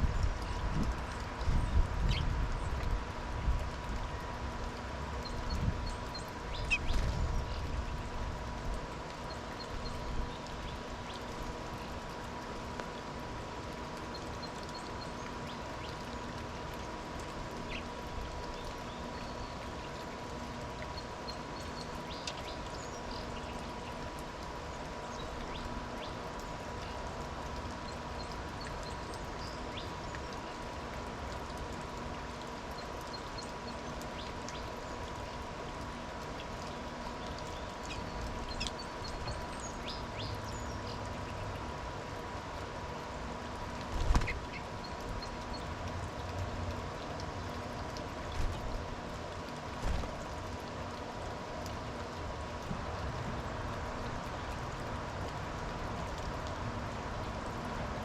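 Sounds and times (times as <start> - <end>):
small birds chirping: 0.0 - 3.0, 3.6 - 42.2, 43.4 - 46.3
faint constant hum: 0.0 - 58.0.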